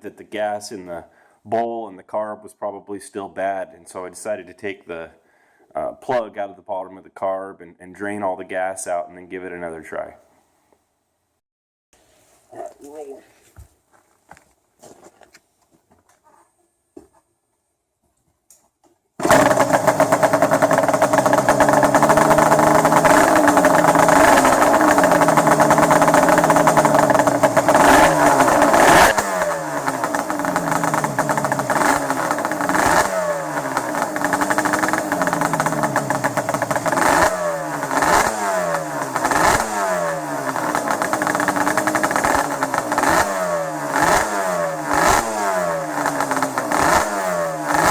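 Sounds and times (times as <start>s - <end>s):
two-stroke engine revving: 19.2s - 47.9s.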